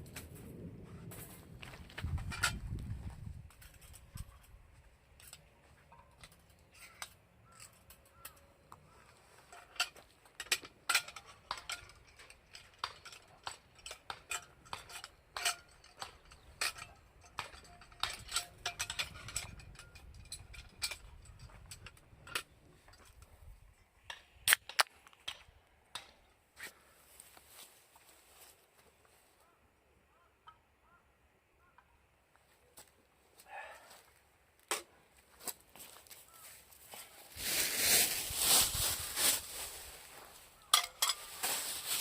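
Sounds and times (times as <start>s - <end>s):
sharp clicks and light clatters: 2.0s - 8.9s, 9.5s - 23.4s.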